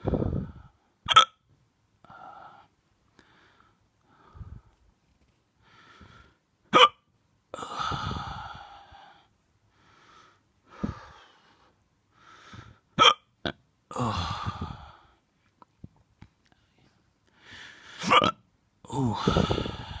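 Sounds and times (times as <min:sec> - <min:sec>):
person hiccuping: 0:01.1 - 0:01.4, 0:06.7 - 0:07.0, 0:13.0 - 0:13.6, 0:18.0 - 0:18.5
breathy exhale: 0:07.6 - 0:12.8, 0:14.0 - 0:15.2, 0:18.9 - 0:20.0.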